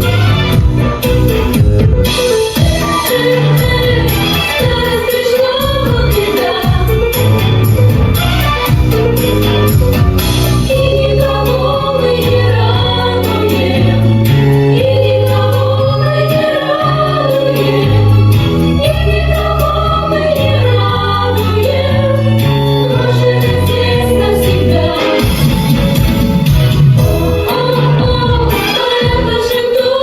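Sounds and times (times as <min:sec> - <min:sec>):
backing track with steady beat: 0:00.0 - 0:30.0
group of voices singing: 0:02.4 - 0:30.0.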